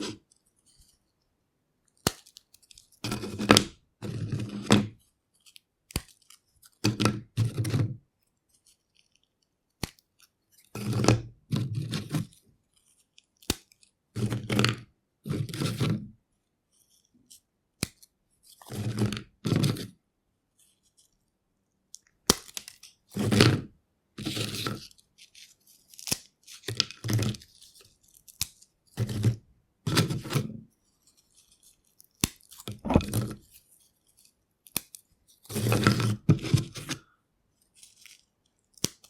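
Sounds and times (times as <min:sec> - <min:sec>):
crackling and crunching: 0:01.9 - 0:07.0, 0:24.2 - 0:37.0, 0:37.6 - 0:39.0
crisps snapping: 0:02.0 - 0:02.8, 0:22.2 - 0:22.8, 0:32.0 - 0:33.3, 0:37.9 - 0:39.0.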